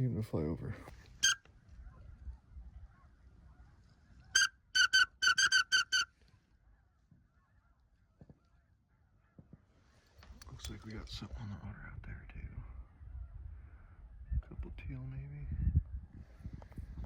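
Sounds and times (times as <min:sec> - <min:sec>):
goose call honks: 0:01.2 - 0:01.4, 0:04.3 - 0:06.1.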